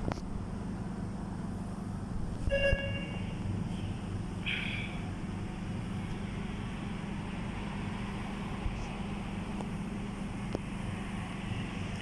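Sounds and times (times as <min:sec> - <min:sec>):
air conditioner humming: 0:00.0 - 0:12.0.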